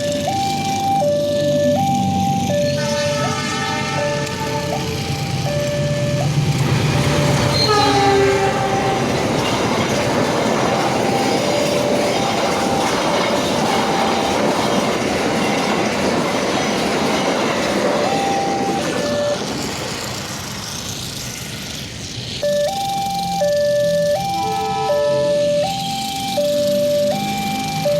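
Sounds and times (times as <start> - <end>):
crossing alarm tones: 0.0 - 19.6, 22.4 - 27.9
train wheels rumbling on rails: 0.0 - 27.9
train horn blast: 2.8 - 5.0, 7.4 - 9.3, 24.4 - 25.2.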